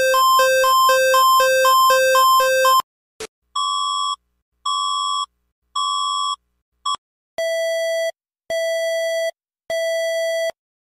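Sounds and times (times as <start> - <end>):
high electronic alarm beeps: 0.0 - 2.8.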